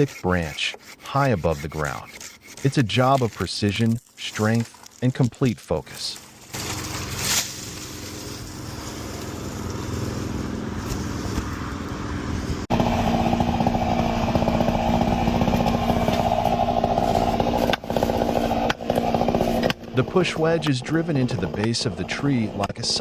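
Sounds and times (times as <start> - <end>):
saw at high pitch: 0.0 - 3.9
chainsaw engine running: 0.0 - 23.0.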